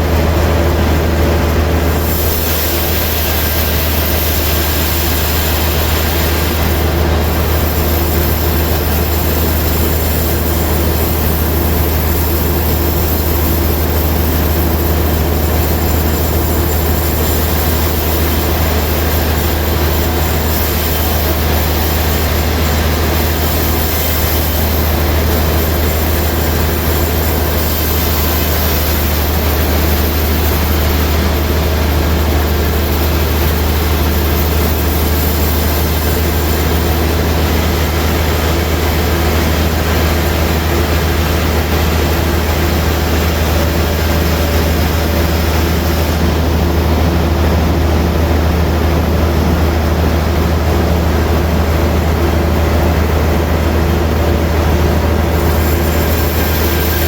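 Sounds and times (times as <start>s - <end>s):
sawmill machinery drone: 0.0s - 57.0s.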